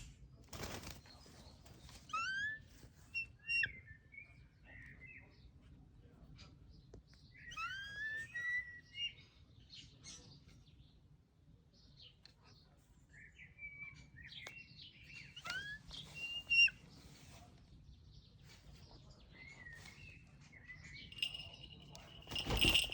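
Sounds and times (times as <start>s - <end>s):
small birds chirping: 0.0s - 22.9s.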